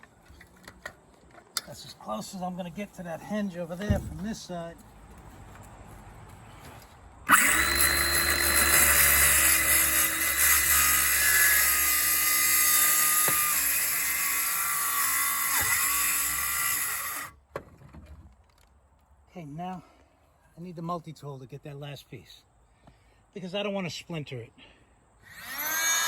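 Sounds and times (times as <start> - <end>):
circular saw cutting plywood: 7.3 - 17.3, 25.3 - 26.0.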